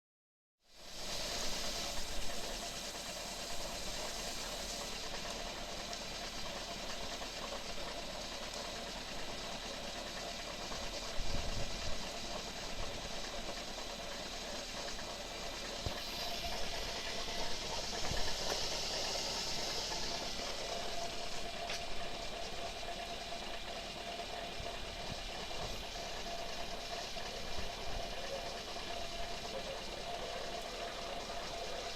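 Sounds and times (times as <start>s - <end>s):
car engine idling: 0.7s - 31.9s
engine knocking: 0.7s - 31.9s.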